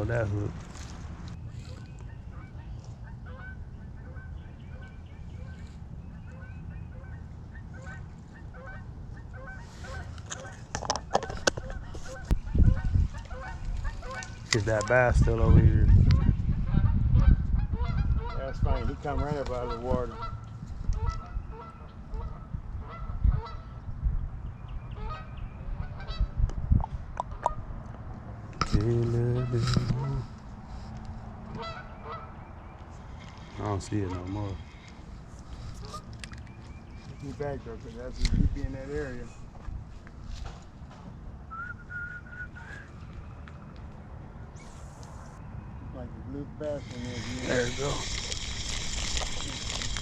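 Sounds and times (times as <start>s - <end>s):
geese honking: 1.6s - 23.9s, 25.0s - 26.3s, 29.2s - 30.7s, 31.4s - 36.3s.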